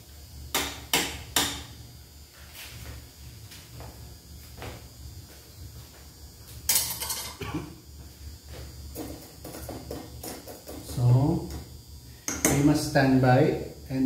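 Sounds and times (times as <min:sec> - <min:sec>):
steady low hum: 0:00.0 - 0:14.0
metal utensils clattering on pot: 0:06.7 - 0:07.4.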